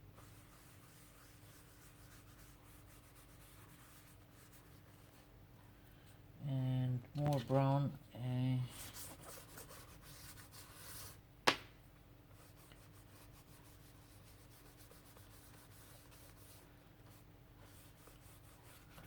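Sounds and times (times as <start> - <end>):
faint rubbing on paper: 0.1 - 5.3, 8.7 - 11.2, 12.3 - 19.0.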